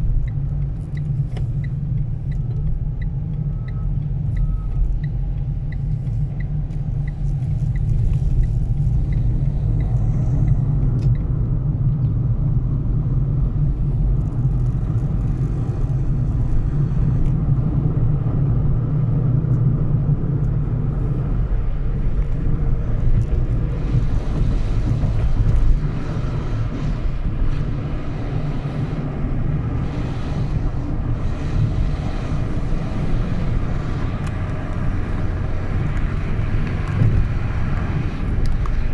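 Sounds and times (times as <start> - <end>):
moving car rumble: 0.0 - 38.9
faint regular ticking: 0.2 - 11.4.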